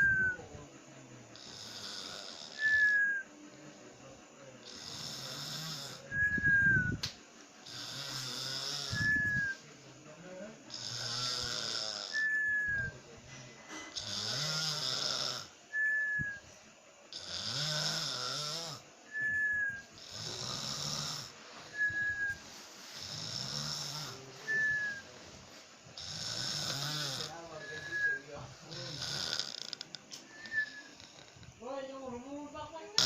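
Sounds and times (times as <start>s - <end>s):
person snoring: 1.3s - 3.2s, 4.6s - 6.3s, 7.6s - 9.6s, 10.7s - 12.3s, 13.9s - 15.5s, 17.1s - 18.9s, 20.0s - 25.1s, 26.0s - 31.5s.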